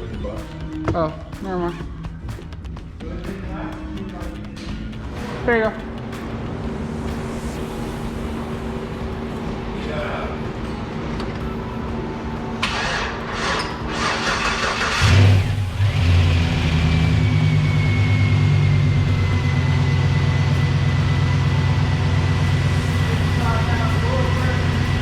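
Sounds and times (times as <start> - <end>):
thin high whine: 5.8 - 14.0, 15.4 - 25.0
car engine cranking and idling: 10.3 - 25.0.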